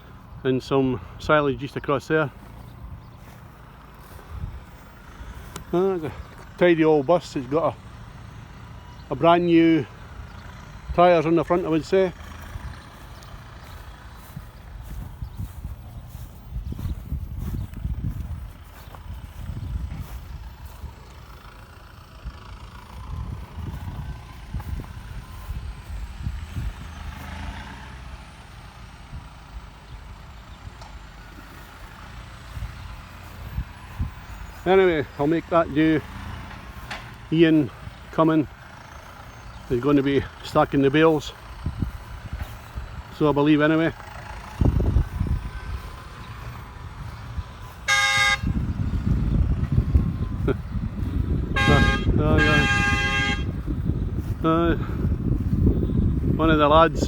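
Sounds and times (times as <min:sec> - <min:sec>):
vehicle engines rumbling: 0:00.0 - 0:57.0
vehicle horn toot: 0:47.1 - 0:54.6.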